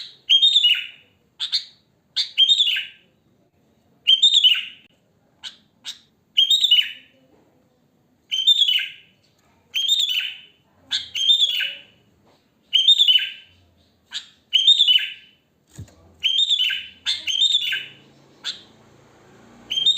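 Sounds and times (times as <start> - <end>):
bulbul singing: 8.3 - 12.0, 12.6 - 15.4, 16.2 - 18.9, 19.6 - 19.9.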